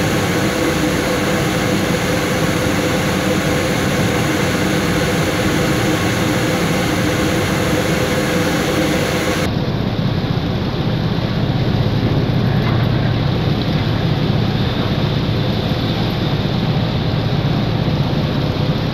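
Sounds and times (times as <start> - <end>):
rushing water: 0.0 - 9.5
boat engine drone: 0.0 - 18.9
rushing wind: 0.0 - 18.9.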